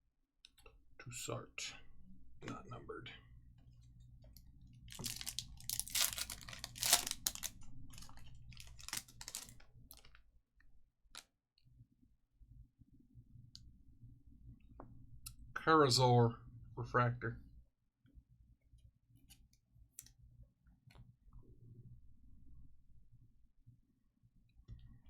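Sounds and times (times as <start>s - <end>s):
cards and packs crinkling: 4.9s - 10.2s.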